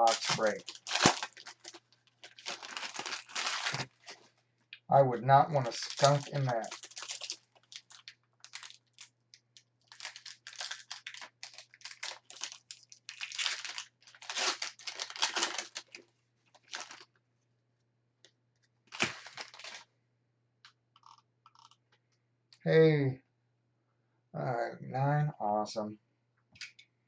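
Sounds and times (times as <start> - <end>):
foil wrappers crinkling: 0.0 - 4.3, 5.6 - 17.1, 18.9 - 19.8.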